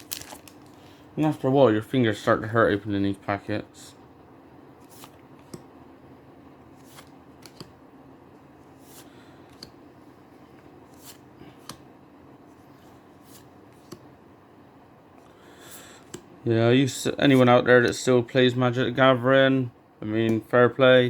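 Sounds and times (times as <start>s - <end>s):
wrapper crinkling and tearing: 0.0s - 0.9s.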